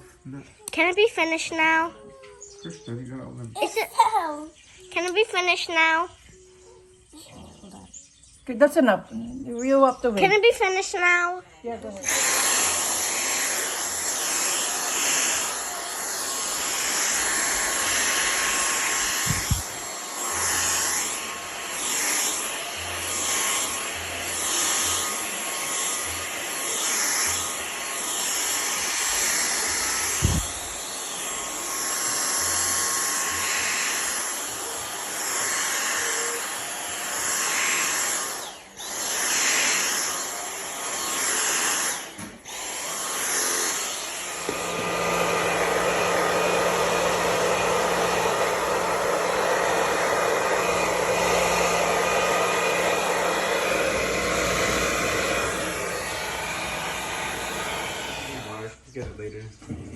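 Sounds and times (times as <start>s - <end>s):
electric appliance blowing air: 11.9s - 58.8s.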